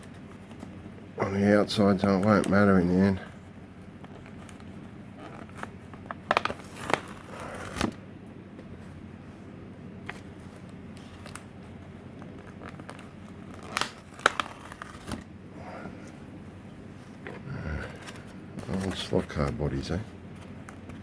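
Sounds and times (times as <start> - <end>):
plastic shell crinkling and crackling: 5.3 - 7.4, 12.1 - 15.3, 18.0 - 20.0.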